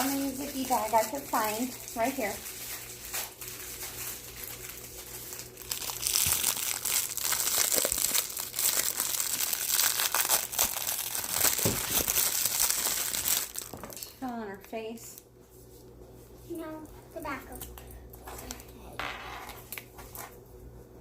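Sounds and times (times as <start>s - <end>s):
plastic bag crinkling: 0.0s - 14.4s.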